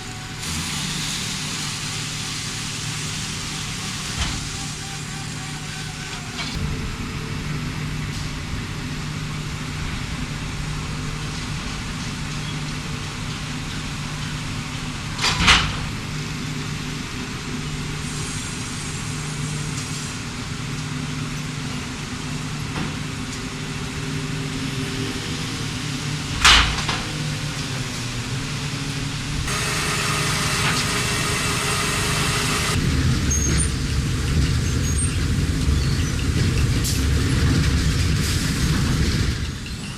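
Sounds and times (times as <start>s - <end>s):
machinery engine hum: 0.0s - 34.6s
hissing: 29.5s - 32.8s.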